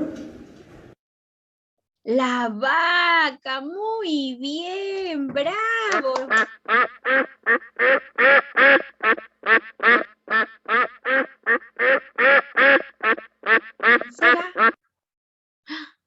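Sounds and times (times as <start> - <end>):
duck quacking: 6.2 - 14.8.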